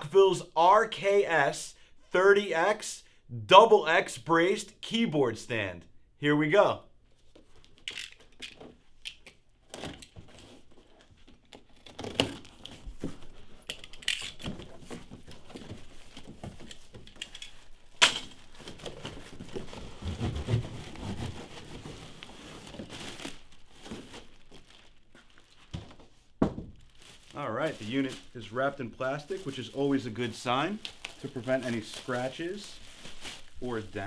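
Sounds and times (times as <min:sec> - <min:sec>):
plastic packaging crinkling and tearing: 0:07.6 - 0:26.1, 0:26.8 - 0:34.0.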